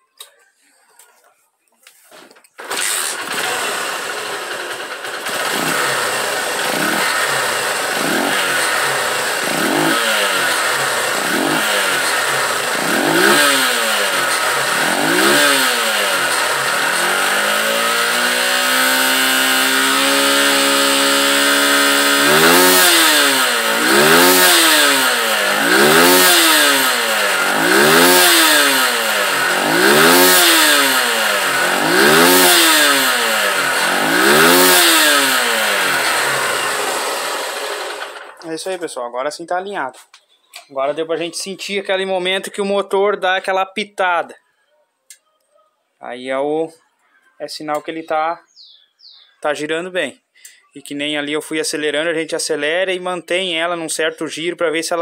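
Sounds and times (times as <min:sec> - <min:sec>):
motorcycle engine revving: 0:02.6 - 0:38.5.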